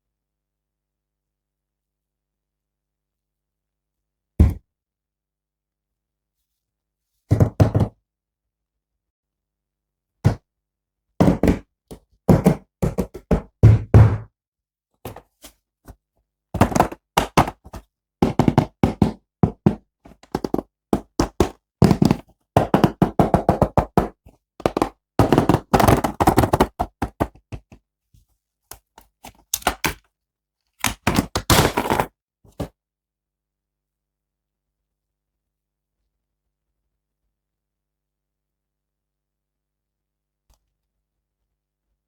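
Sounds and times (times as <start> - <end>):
toy figures and packaging handled: 28.7 - 30.0, 30.7 - 32.7.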